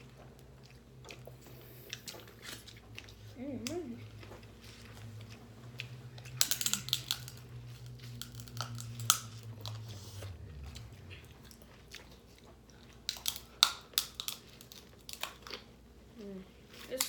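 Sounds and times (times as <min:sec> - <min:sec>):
people chewing: 0:00.0 - 0:17.0
shells cracking: 0:06.4 - 0:07.4, 0:13.1 - 0:15.4.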